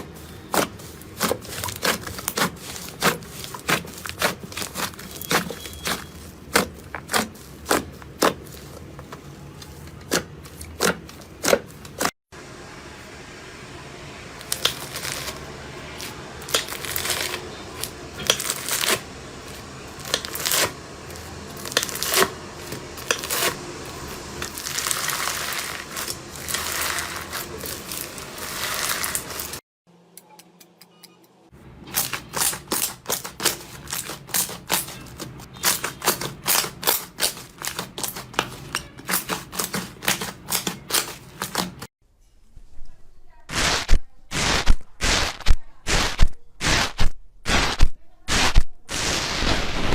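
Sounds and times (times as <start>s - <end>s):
slime crackling and popping: 14.4s - 15.4s, 16.0s - 19.0s, 20.0s - 20.7s, 24.4s - 29.6s.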